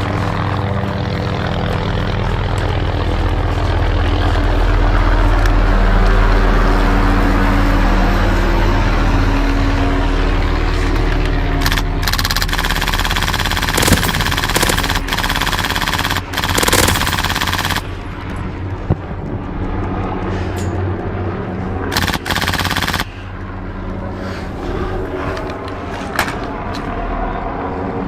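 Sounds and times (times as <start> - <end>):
steady low hum: 0.0 - 26.7
airsoft gun full-auto bursts: 11.6 - 18.0, 21.9 - 23.2.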